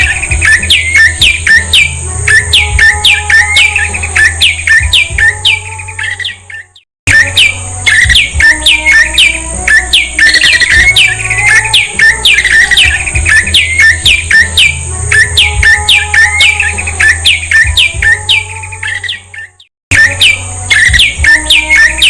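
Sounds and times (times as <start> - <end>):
bird chirping rapidly: 0.0 - 22.0.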